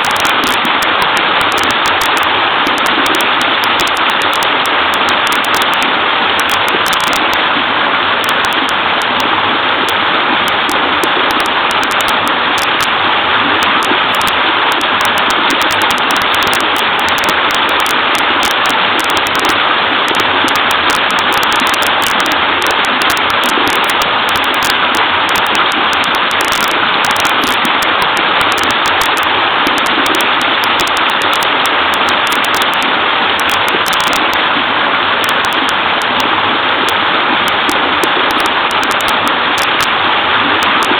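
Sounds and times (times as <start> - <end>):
waterfall rushing into stream: 0.0 - 40.9.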